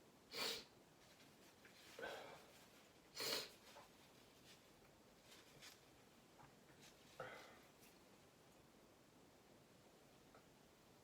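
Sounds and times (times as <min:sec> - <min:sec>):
person sneezing: 0:00.3 - 0:00.7, 0:03.2 - 0:03.6.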